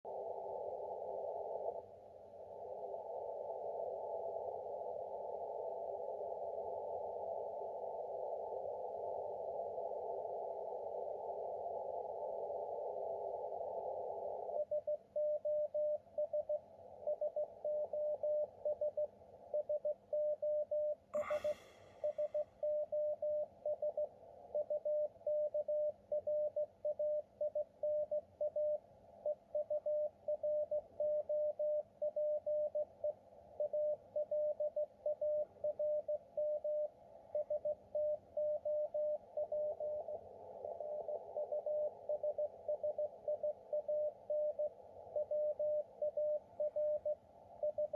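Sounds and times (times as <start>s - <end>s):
radio band noise hiss: 21.2s - 22.3s.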